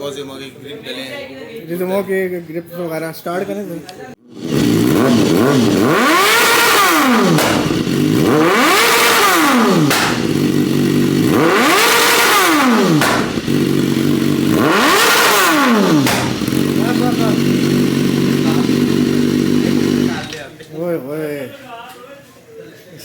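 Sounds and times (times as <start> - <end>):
motorcycle engine revving: 4.3 - 20.6.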